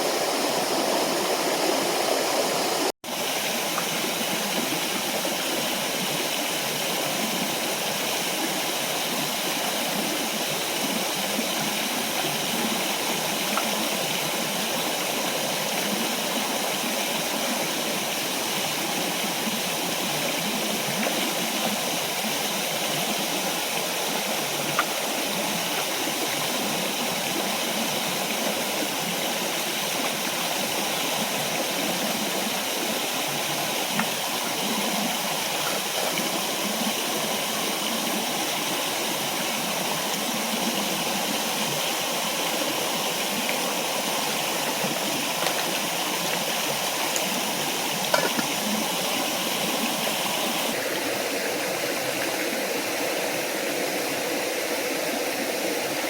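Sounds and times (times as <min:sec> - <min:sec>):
waterfall and stream rushing: 0:00.0 - 0:56.0.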